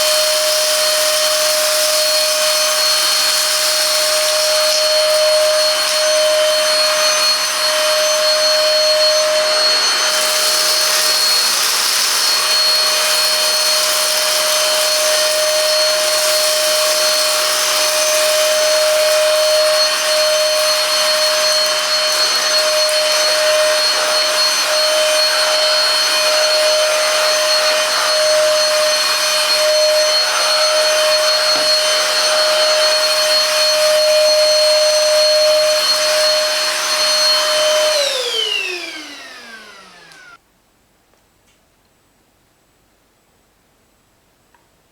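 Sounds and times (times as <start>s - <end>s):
vacuum cleaner motor whine: 0.0s - 40.4s.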